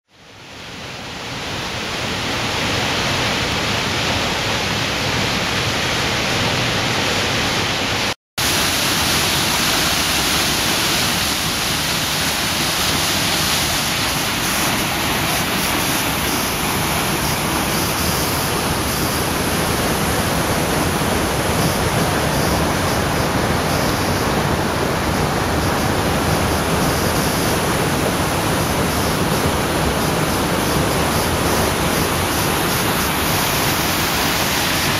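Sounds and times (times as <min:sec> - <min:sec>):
waterfall rushing: 0:00.3 - 0:34.9.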